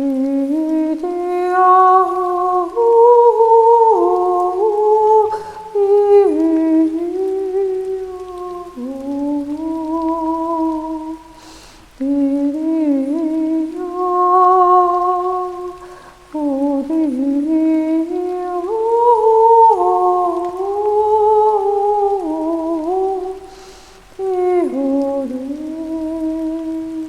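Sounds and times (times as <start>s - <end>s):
woman breathing: 5.3s - 5.7s, 11.3s - 12.0s, 15.8s - 16.3s, 23.5s - 24.2s.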